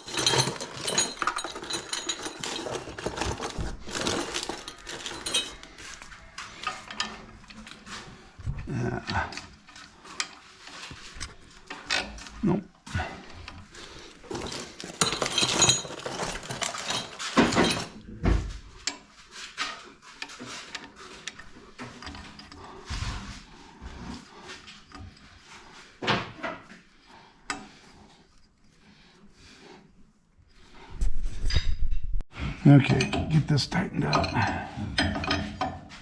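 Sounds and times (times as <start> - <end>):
tools scraping metal fittings: 0.0 - 8.2, 32.8 - 36.0.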